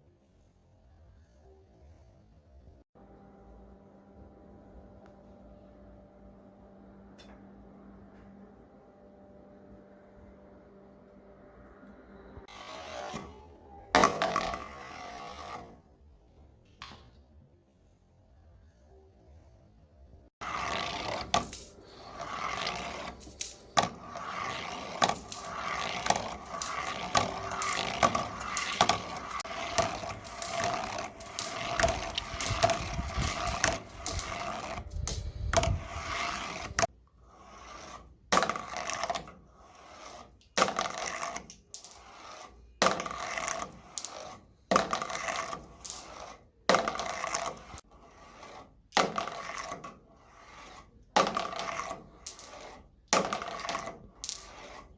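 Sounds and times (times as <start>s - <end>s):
marbles rolling and clattering: 20.4s - 36.9s, 38.4s - 47.9s, 51.2s - 54.9s.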